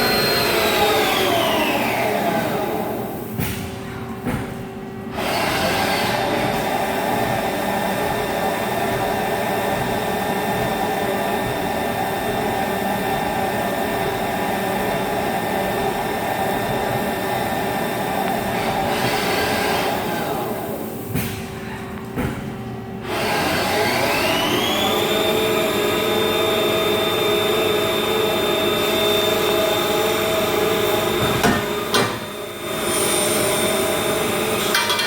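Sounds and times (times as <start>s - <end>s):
lathe spindle whine: 0.0s - 3.2s, 23.1s - 34.9s.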